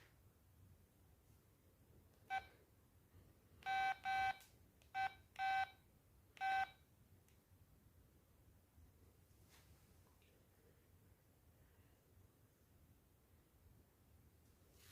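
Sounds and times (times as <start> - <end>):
mobile phone beeping: 3.6 - 4.4, 5.0 - 5.8, 6.4 - 6.8.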